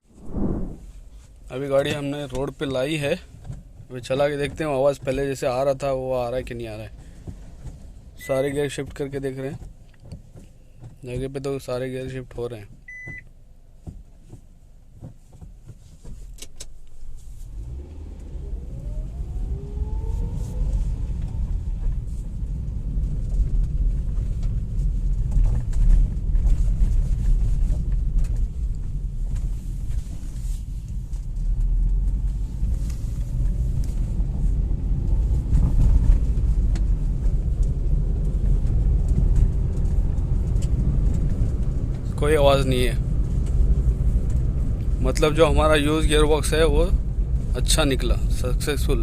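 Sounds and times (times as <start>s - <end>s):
road noise: 0.0s - 49.0s
car engine revving: 17.1s - 22.6s.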